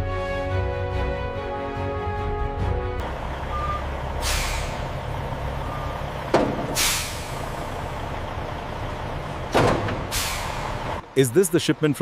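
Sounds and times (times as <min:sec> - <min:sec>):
truck engine rumbling: 0:00.5 - 0:12.0
air brakes hissing: 0:03.7 - 0:07.9, 0:09.7 - 0:11.0
sharp clunk: 0:06.3 - 0:07.0, 0:09.5 - 0:10.4.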